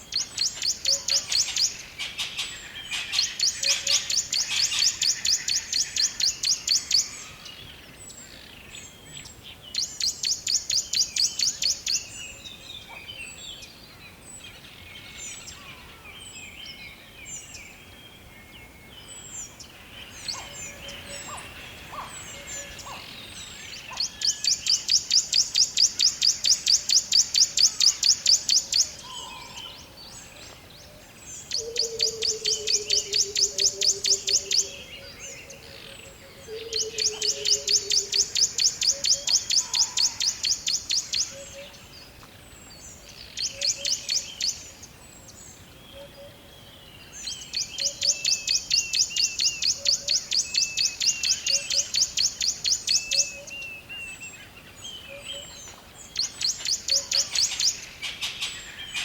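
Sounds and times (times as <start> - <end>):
bird chirps and calls: 0.0 - 13.7, 14.4 - 42.1, 42.7 - 59.0.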